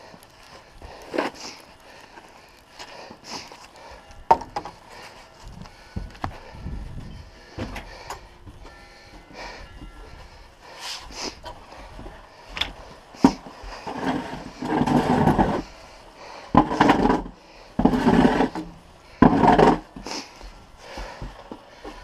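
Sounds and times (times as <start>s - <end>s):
snow shovel scraping snow: 13.2s - 15.8s, 16.6s - 18.6s.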